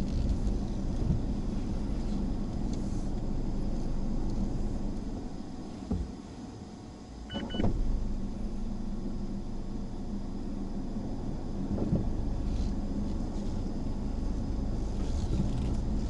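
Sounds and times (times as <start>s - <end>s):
car engine and road noise: 0.0s - 16.0s
short high beeps: 7.3s - 7.6s.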